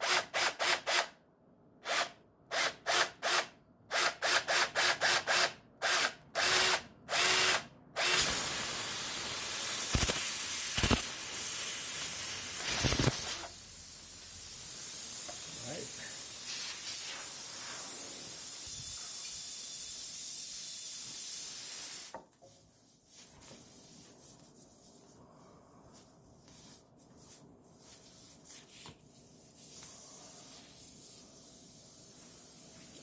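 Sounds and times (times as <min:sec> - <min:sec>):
air hissing from tyre: 0:08.2 - 0:22.2, 0:23.1 - 0:33.0
tools scraping and rubbing: 0:12.0 - 0:13.6.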